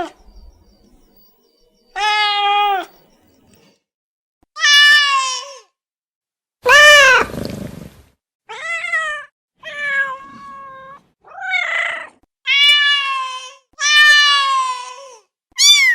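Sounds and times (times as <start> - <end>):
cat meowing loudly: 4.6 - 5.6, 6.6 - 7.3, 8.5 - 15.0, 15.6 - 15.9.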